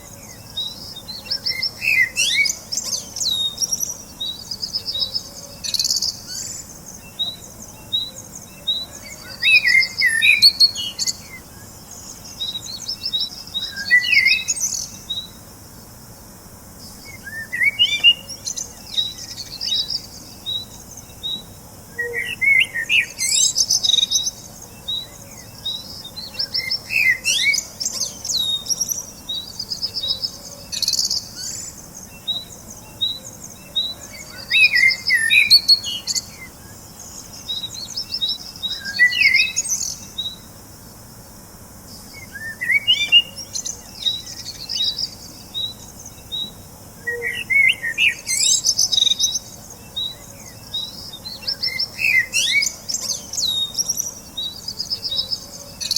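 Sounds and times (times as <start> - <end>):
birds chirping: 0.0 - 55.9.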